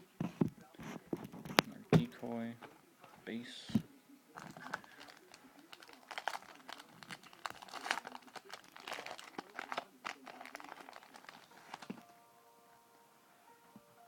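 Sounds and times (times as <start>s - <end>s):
wrapper crinkling and tearing: 4.4s - 12.1s.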